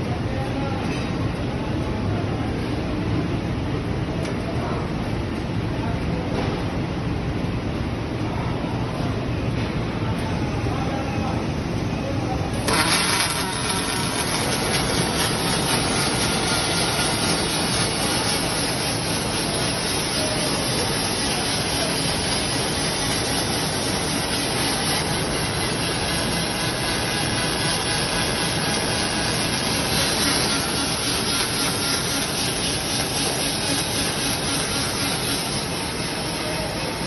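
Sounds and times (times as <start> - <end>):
welding arc hissing and crackling: 12.5 - 37.0.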